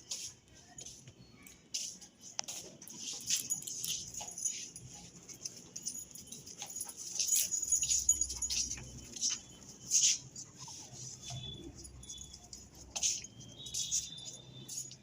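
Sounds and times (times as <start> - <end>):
high-pitched scratches and clicks: 8.5 - 15.0.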